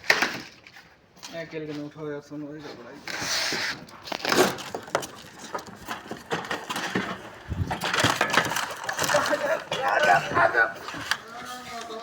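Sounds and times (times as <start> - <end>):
heavy unit knocking and scraping: 5.6 - 11.2.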